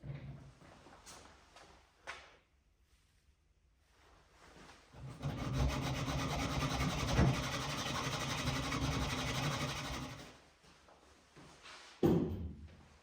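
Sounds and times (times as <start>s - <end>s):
electric sander on wood: 5.3s - 10.3s.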